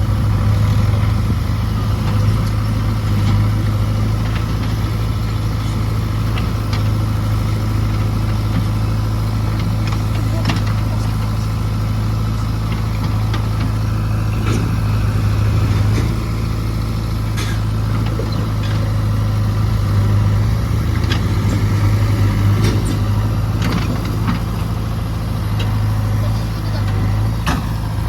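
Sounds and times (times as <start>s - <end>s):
heavy diesel engine running: 0.0s - 28.0s
knocks and clanks: 9.6s - 11.4s, 12.7s - 14.9s, 15.6s - 16.4s, 21.0s - 24.7s, 26.8s - 27.8s.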